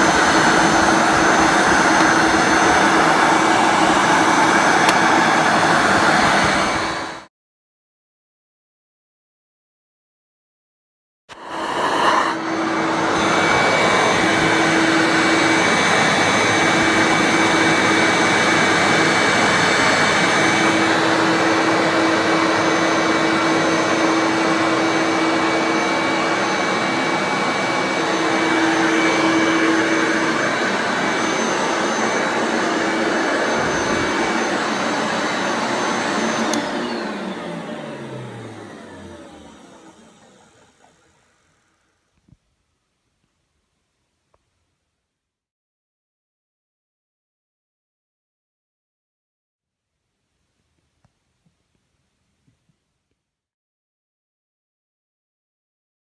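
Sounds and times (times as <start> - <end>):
vacuum cleaner motor whining: 0.0 - 7.3, 11.3 - 42.4.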